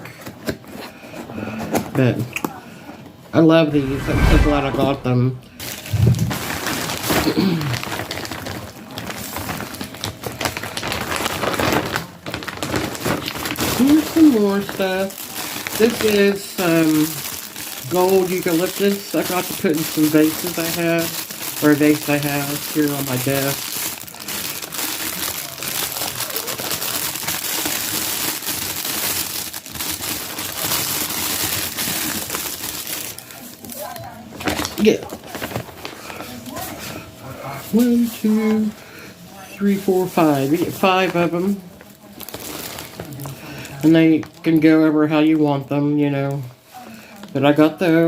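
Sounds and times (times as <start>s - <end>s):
plastic packaging crinkling: 5.6s - 36.9s, 39.6s - 45.3s.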